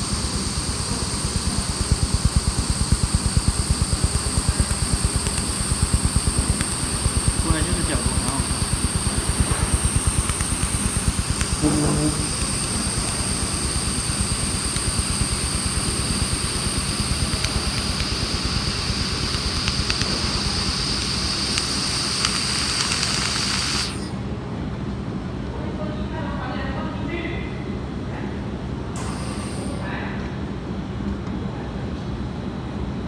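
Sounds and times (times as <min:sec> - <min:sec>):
high whine: 0:00.0 - 0:24.2, 0:29.0 - 0:29.9
laser welder crackling buzz: 0:00.0 - 0:24.2, 0:29.0 - 0:29.8.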